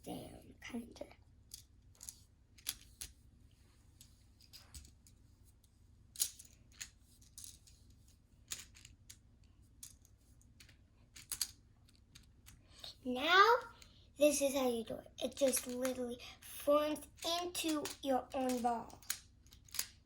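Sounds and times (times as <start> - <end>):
plastic tiles clicking together: 1.5 - 3.2, 6.2 - 9.2, 9.8 - 12.6, 15.3 - 16.1, 17.0 - 20.0.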